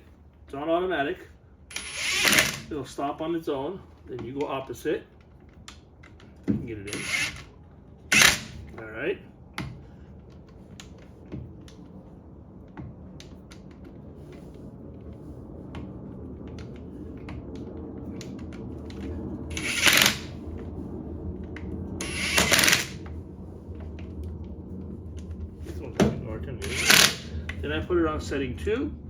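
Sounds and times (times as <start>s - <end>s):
impact wrench hammering: 6.5s - 7.5s, 8.1s - 8.7s, 22.0s - 23.0s, 26.6s - 27.3s.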